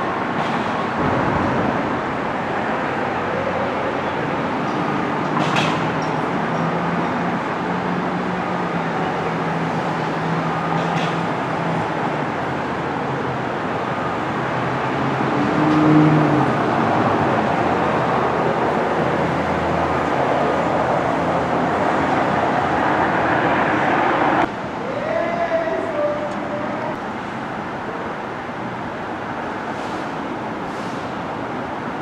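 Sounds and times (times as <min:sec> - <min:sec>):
vehicle engine hum: 0:00.0 - 0:24.8.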